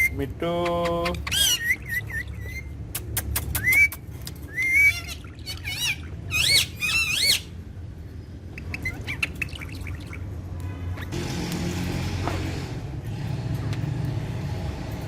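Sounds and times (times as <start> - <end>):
parrots soft chirps: 1.0 - 7.6, 8.4 - 10.2
parrots harsh calls: 1.2 - 2.7, 4.5 - 7.6.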